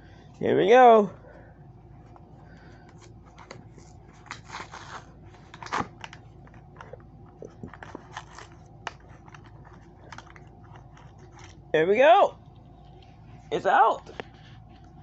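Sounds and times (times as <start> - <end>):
plastic packaging crinkling: 3.0 - 11.7.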